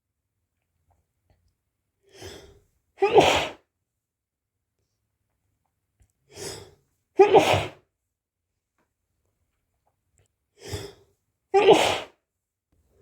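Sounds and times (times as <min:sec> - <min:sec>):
person sneezing: 0:03.0 - 0:03.6, 0:07.2 - 0:07.8, 0:11.6 - 0:12.2.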